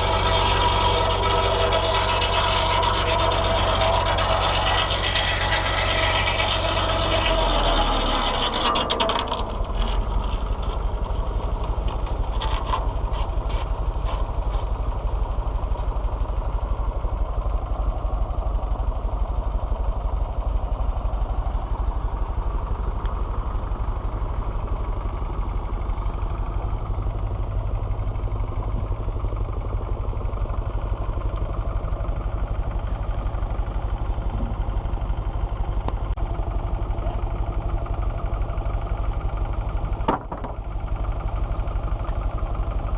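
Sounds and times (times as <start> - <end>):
clanking: 0.0 - 14.8, 39.9 - 40.7
tractor engine running: 0.0 - 42.9.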